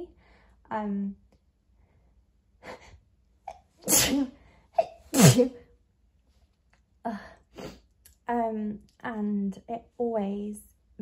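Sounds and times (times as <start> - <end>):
woman sneezing: 3.8 - 5.6.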